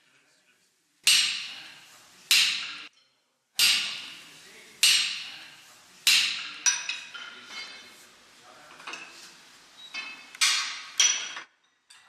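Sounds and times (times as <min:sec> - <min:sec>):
hammer striking metal on anvil: 0:01.0 - 0:02.9, 0:03.6 - 0:07.2.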